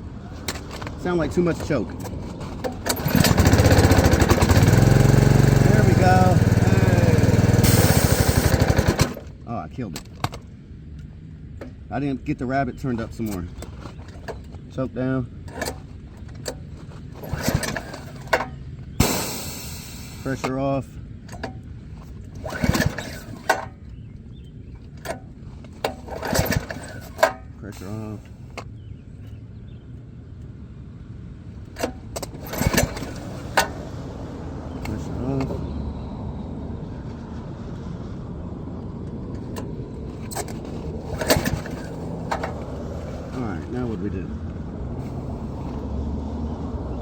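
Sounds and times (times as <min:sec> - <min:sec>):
pull-starting small gas engine: 0:00.4 - 0:09.4, 0:15.4 - 0:20.5, 0:21.3 - 0:24.0, 0:24.8 - 0:28.6, 0:31.7 - 0:34.0, 0:34.7 - 0:35.7, 0:39.3 - 0:44.2.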